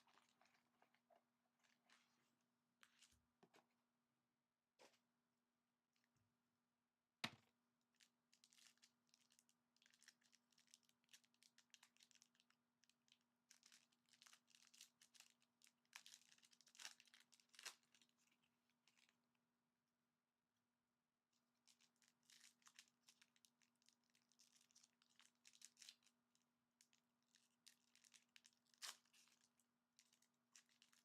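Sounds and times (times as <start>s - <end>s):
wrapper tearing and crinkling: 13.5s - 18.1s, 21.7s - 26.1s, 27.3s - 31.0s.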